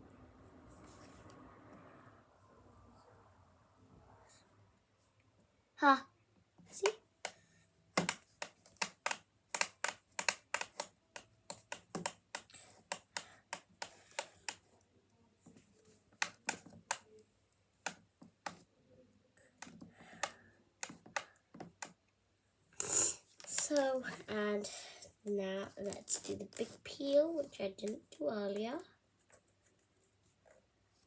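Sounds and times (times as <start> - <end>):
plastic buttons clicking: 6.7 - 7.4, 8.0 - 14.6, 16.2 - 17.1.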